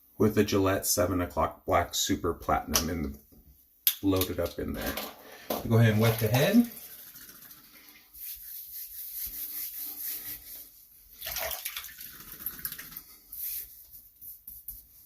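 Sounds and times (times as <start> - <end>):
water splashing and trickling: 5.7 - 8.1, 11.2 - 13.0.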